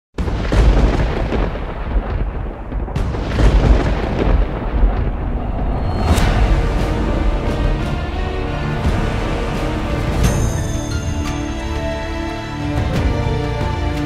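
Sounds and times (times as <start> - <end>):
sudden booms: 0.2 - 11.0
deep rumbling: 0.2 - 14.0.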